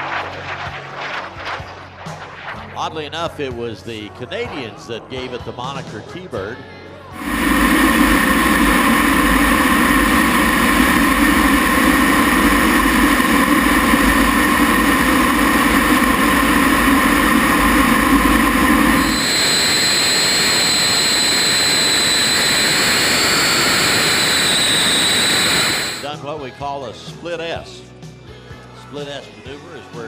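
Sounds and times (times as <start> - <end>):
high steady jet whine: 7.2 - 26.1
jet engine rumbling and droning: 7.2 - 26.1.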